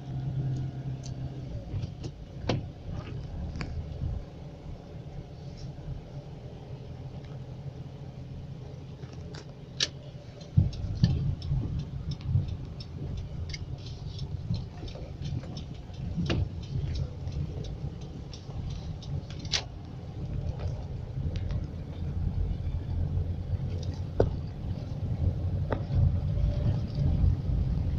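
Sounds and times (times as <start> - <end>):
raindrops ticking: 10.3 - 21.8
low rumble: 10.5 - 27.9.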